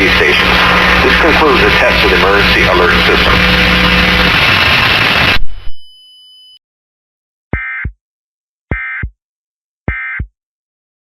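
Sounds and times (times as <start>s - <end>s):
loud noisy sound: 0.0s - 5.8s.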